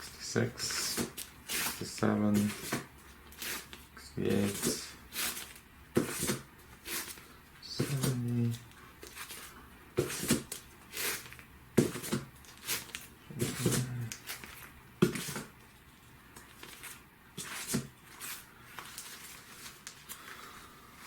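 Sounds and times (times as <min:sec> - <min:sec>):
plastic sleeves crinkling: 0:10.2 - 0:20.5.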